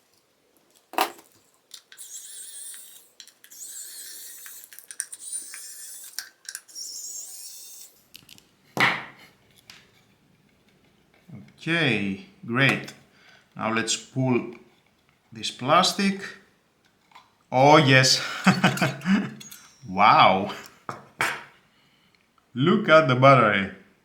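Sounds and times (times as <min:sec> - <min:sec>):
plastic parts squeaking and scraping: 0:00.6 - 0:08.6, 0:18.6 - 0:20.8.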